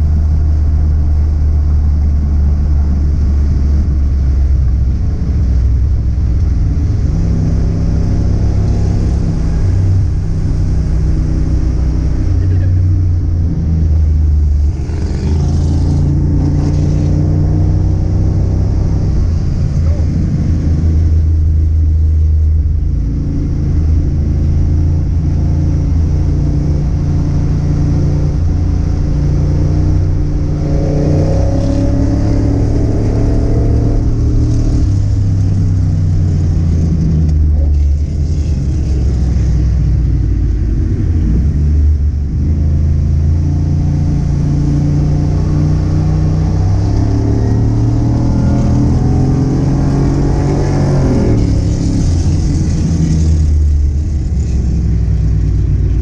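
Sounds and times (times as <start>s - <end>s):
car engine running under load: 0.0s - 56.0s.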